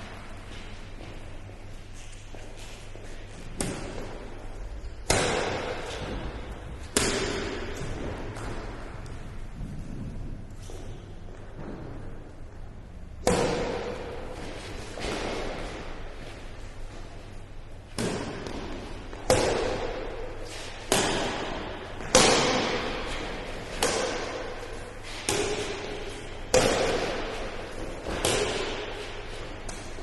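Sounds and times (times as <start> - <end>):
rackets hitting shuttlecock: 3.4 - 4.4, 5.0 - 10.1, 13.2 - 16.5, 17.9 - 30.0.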